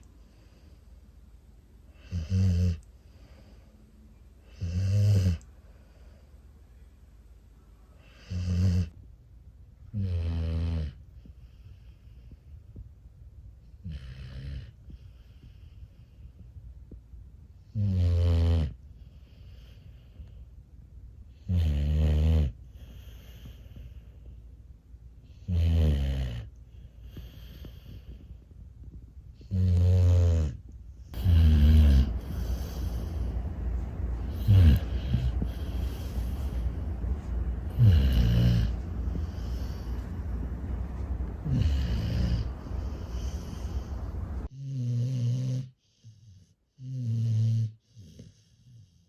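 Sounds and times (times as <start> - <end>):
faint breaths: 0.0 - 8.4, 10.9 - 13.1, 14.6 - 17.7, 18.7 - 21.5, 22.5 - 25.5, 26.4 - 29.6, 30.5 - 44.5
puppy snoring: 1.9 - 3.6, 4.4 - 5.5, 8.0 - 9.0, 9.9 - 12.4, 13.7 - 16.3, 17.7 - 20.2, 21.3 - 24.3, 25.2 - 28.4, 29.3 - 49.0.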